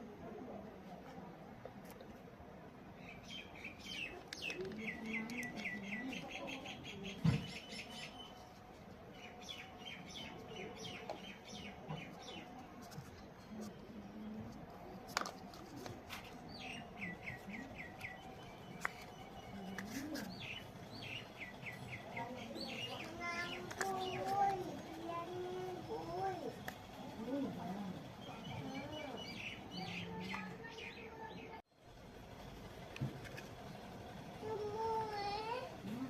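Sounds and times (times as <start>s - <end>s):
small birds chirping: 3.0s - 31.6s.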